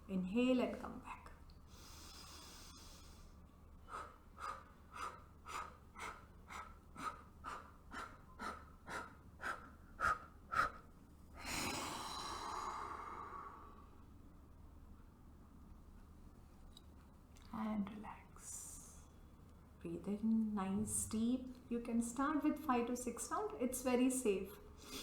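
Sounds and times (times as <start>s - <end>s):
woman breathing in: 1.7s - 10.7s, 11.4s - 13.9s.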